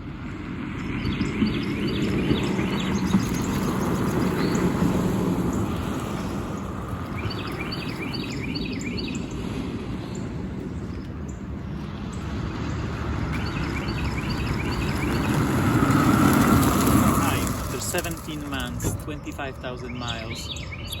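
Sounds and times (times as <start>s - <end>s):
low outdoor rumble: 0.0s - 21.0s
bird chirping: 0.8s - 5.7s, 7.1s - 9.5s, 12.7s - 21.0s.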